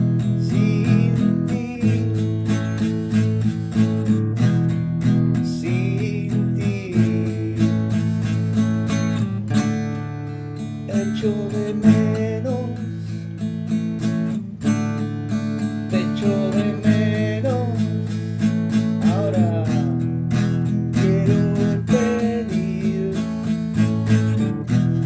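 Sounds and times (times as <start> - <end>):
strummed acoustic guitar: 0.0 - 25.0.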